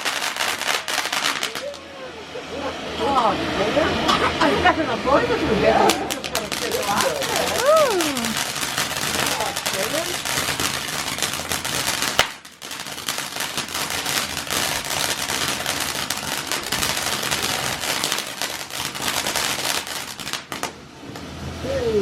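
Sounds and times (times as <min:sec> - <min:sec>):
fireworks crackling: 0:00.0 - 0:22.0
loud firework bang: 0:05.8 - 0:21.3.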